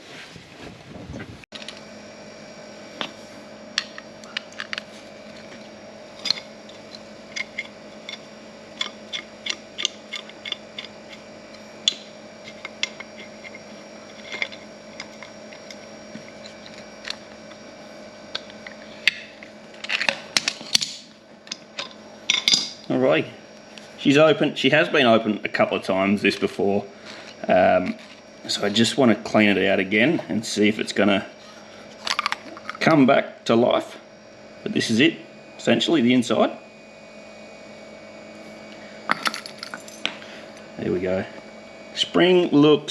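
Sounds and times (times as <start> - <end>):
steady low hum: 0.0 - 42.9.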